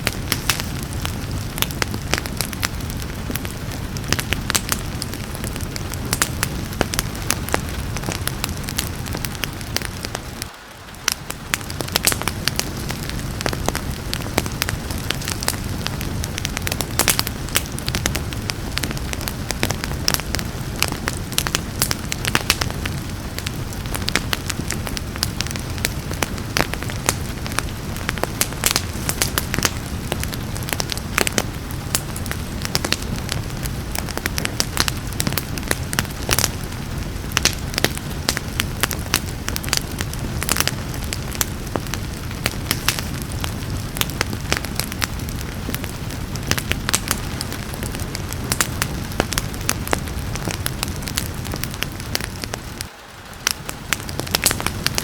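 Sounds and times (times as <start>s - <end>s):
rain hissing: 0.0s - 55.0s
wood fire crackling: 0.0s - 55.0s.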